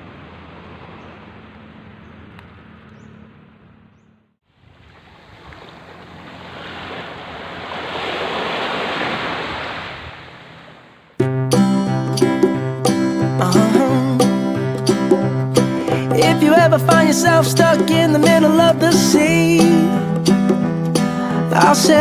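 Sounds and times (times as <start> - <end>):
ocean surf rushing: 5.1 - 11.0, 11.7 - 22.0.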